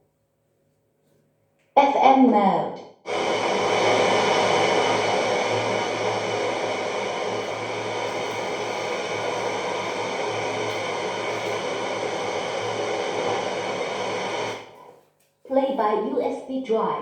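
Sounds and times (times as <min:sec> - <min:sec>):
radio static hiss: 0:03.1 - 0:14.9.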